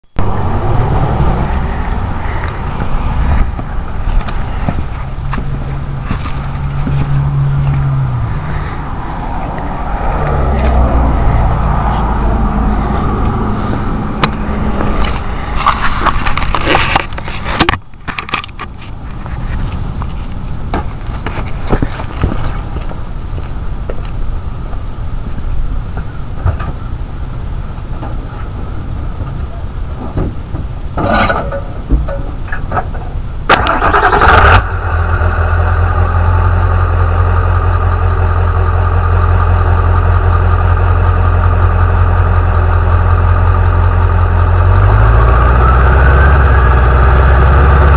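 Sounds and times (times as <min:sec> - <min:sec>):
diesel truck engine rumbling: 0:00.0 - 0:47.9
turbocharger whistling: 0:43.6 - 0:47.9.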